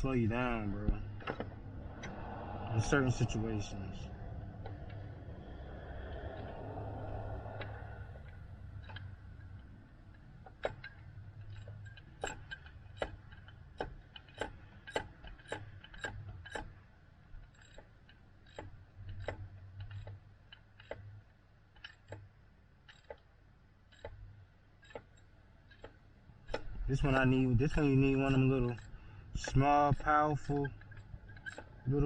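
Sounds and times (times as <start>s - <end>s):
ratchet wrench clicking: 8.8s - 16.8s, 17.4s - 21.1s, 22.9s - 23.2s, 23.8s - 24.2s, 24.8s - 26.7s, 27.8s - 32.0s.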